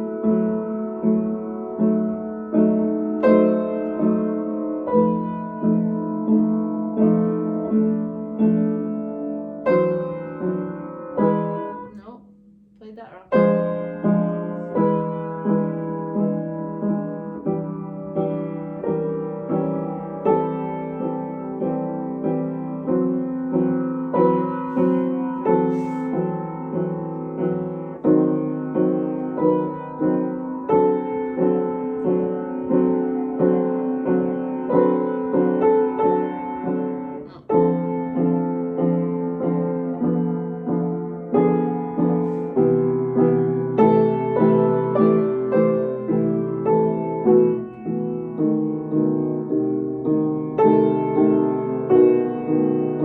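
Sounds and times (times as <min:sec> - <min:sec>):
solo piano playing: 0:00.0 - 0:53.0.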